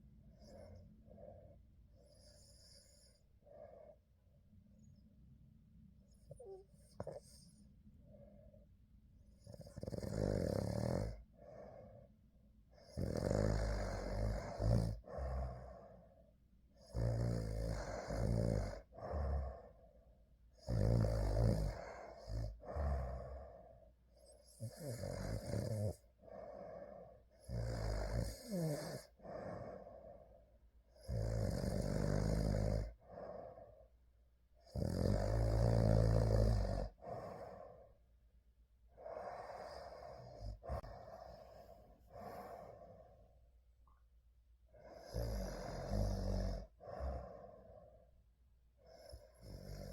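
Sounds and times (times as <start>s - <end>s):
quiet breathing: 0.0s - 9.9s, 11.1s - 17.0s, 17.8s - 20.6s, 21.6s - 24.9s, 25.6s - 27.6s, 28.3s - 31.1s, 31.7s - 34.6s, 36.6s - 49.9s
person snoring: 9.5s - 11.2s, 12.9s - 15.9s, 16.9s - 19.7s, 20.6s - 23.5s, 24.6s - 26.7s, 27.5s - 30.2s, 31.0s - 33.6s, 34.7s - 37.8s, 44.9s - 47.8s.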